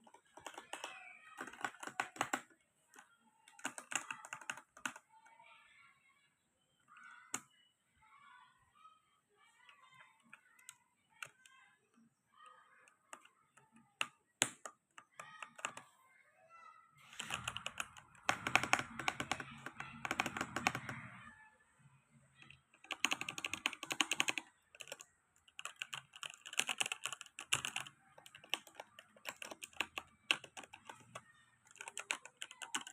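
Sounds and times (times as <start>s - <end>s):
keyboard typing: 0.0s - 5.1s, 9.6s - 11.7s, 12.4s - 15.9s, 17.0s - 21.3s, 22.4s - 32.9s.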